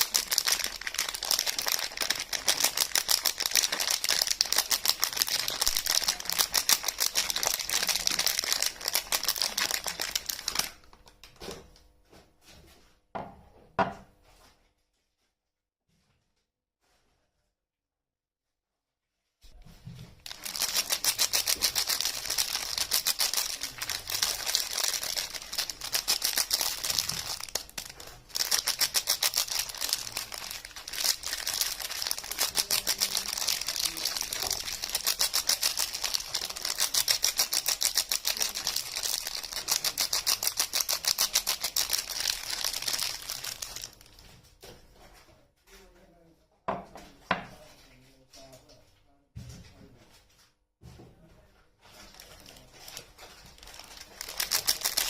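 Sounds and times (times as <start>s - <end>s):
packaging crinkling: 0.0s - 11.2s, 20.2s - 44.3s, 52.0s - 55.0s.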